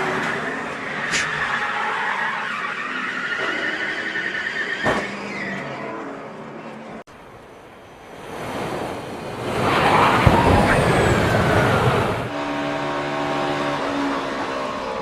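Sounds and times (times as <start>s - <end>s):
car engine droning: 5.3s - 15.0s
racing cars rushing past: 8.2s - 15.0s.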